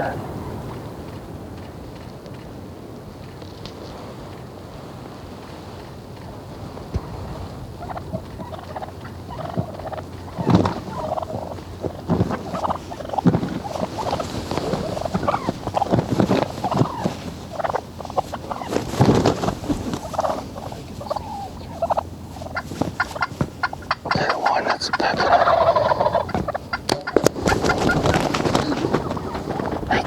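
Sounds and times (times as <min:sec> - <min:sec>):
turkeys gobbling: 0:07.6 - 0:30.0.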